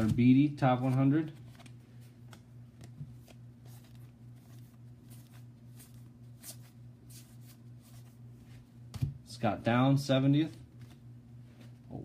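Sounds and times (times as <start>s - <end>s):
low electrical hum: 0.0s - 12.0s
cards flipped through: 0.8s - 8.1s.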